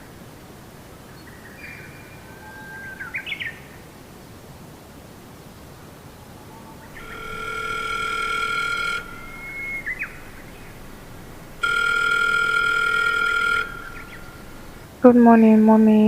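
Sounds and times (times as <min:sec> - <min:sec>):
telephone ringing: 0:07.0 - 0:15.0.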